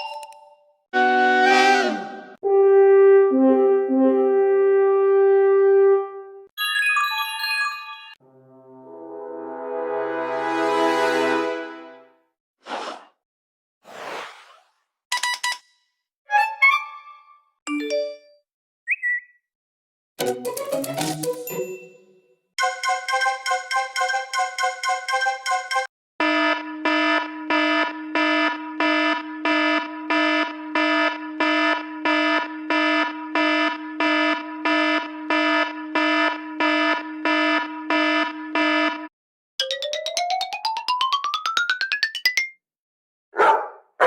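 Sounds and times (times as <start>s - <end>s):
marimba-like phone ringtone: 39.6s - 42.6s.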